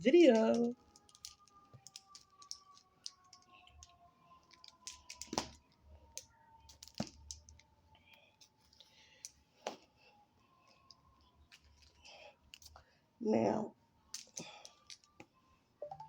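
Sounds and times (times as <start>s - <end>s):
small objects clicking and tapping: 0.0s - 9.9s, 10.7s - 12.8s, 14.1s - 16.0s.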